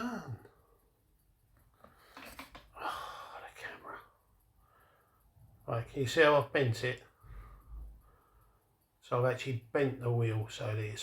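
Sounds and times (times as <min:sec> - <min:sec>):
faint breathing close to microphone: 0:07.1 - 0:08.9.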